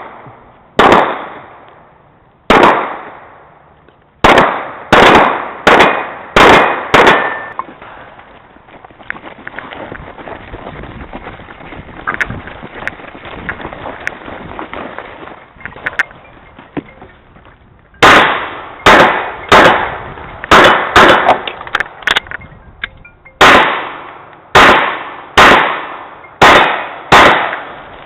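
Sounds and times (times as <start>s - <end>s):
pistol shots: 0.8s - 1.7s, 2.5s - 3.4s, 4.2s - 7.6s, 18.0s - 22.2s, 23.4s - 27.9s.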